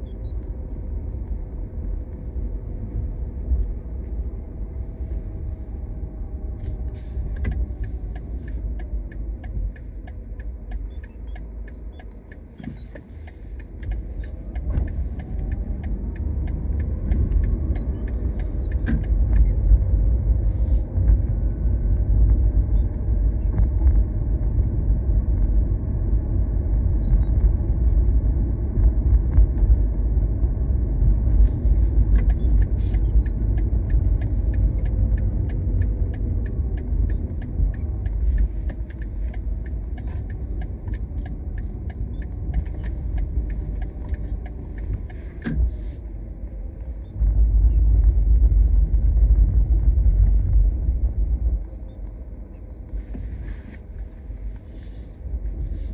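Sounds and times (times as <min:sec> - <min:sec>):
short sharp beeps: 0:00.0 - 0:02.3, 0:10.8 - 0:15.4, 0:17.1 - 0:20.9, 0:22.5 - 0:25.6, 0:27.0 - 0:30.1, 0:31.6 - 0:46.0, 0:46.8 - 0:50.0, 0:51.6 - 0:55.9
road rumble inside car: 0:00.0 - 0:55.9.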